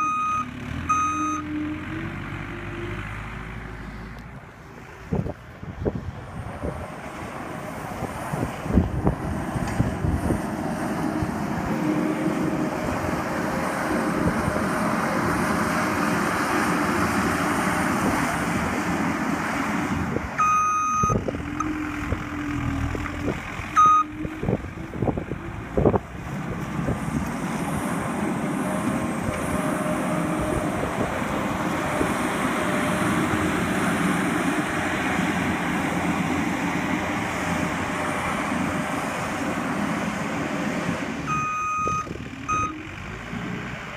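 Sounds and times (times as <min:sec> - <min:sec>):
backup alarm beeping: 0:00.0 - 0:02.1, 0:20.4 - 0:21.9, 0:23.7 - 0:24.3, 0:41.3 - 0:42.8
loader engine running: 0:00.0 - 0:43.9.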